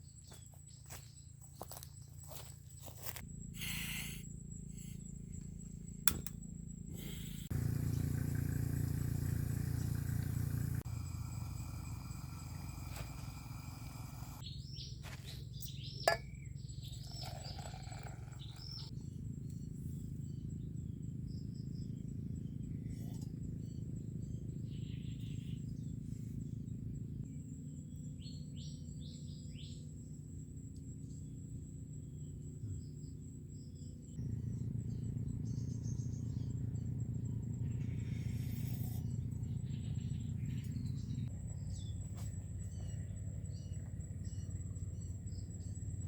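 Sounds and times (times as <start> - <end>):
low outdoor rumble: 2.2 - 14.4, 34.2 - 46.0
sharp click: 6.1 - 6.4.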